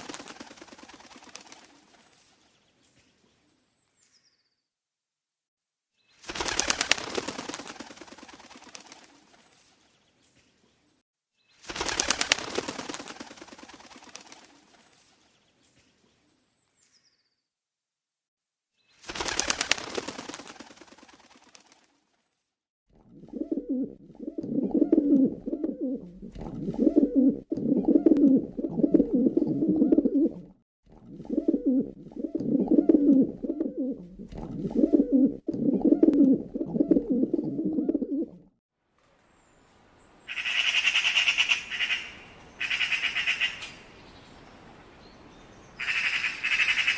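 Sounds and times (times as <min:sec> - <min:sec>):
birds' wings flapping: 0:00.0 - 0:02.5, 0:06.2 - 0:09.9, 0:11.6 - 0:15.3, 0:18.9 - 0:22.2
pigeons cooing: 0:23.2 - 0:38.5.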